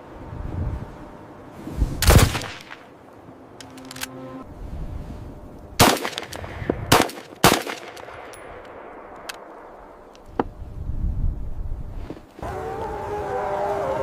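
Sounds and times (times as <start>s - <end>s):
low steady rumble: 0.0s - 7.1s
loud gunshots: 2.0s - 2.8s, 5.8s - 8.2s.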